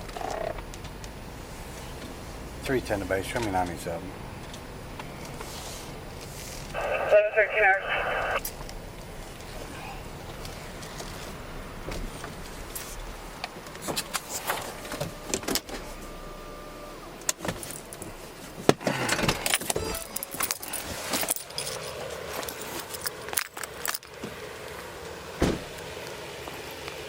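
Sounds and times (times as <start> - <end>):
keys jangling: 19.5 - 24.1.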